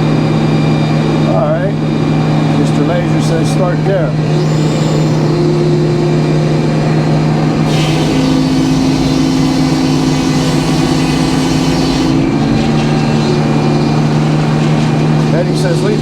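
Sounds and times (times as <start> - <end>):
sawmill machine hum: 0.0 - 16.0
saw cutting log hiss: 7.7 - 16.0.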